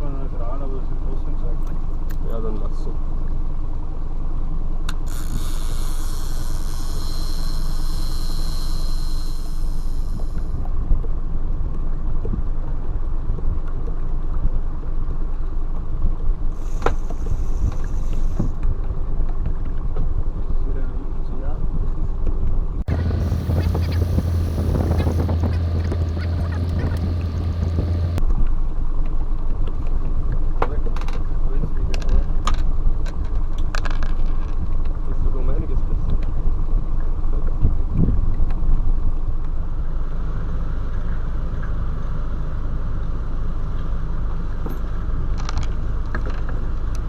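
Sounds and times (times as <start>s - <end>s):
boat engine low rumble: 0.0s - 47.0s
wind noise: 21.7s - 28.5s, 36.7s - 39.1s
motorboat engine humming: 22.8s - 28.2s
crackling water: 22.9s - 28.2s.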